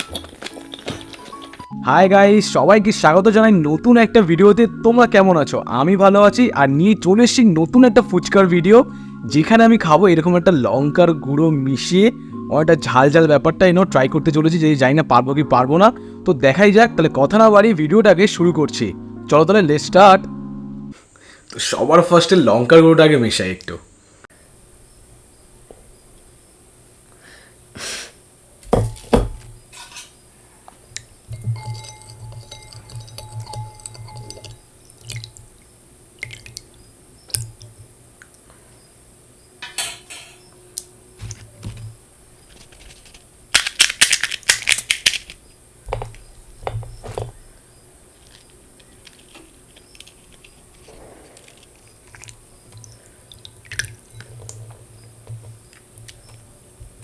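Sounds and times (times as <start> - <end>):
spoon clinking against a bowl: 31.3 - 35.6.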